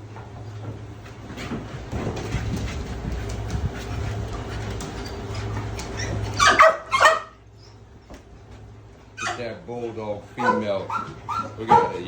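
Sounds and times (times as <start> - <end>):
steady low hum: 0.0 - 12.0
dog barking: 6.4 - 7.4, 10.4 - 12.0.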